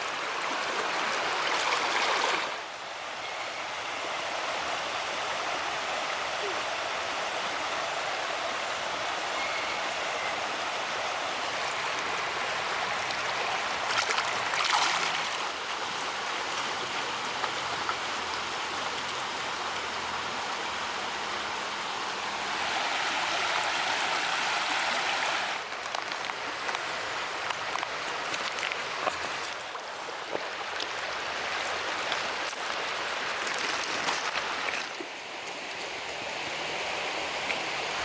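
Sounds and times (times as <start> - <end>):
rushing gurgling water: 0.0 - 38.0.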